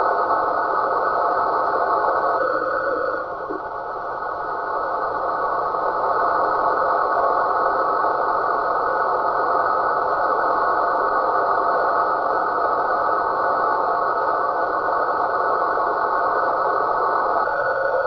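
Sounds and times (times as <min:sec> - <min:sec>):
rushing radio noise signal: 0:02.2 - 0:03.8.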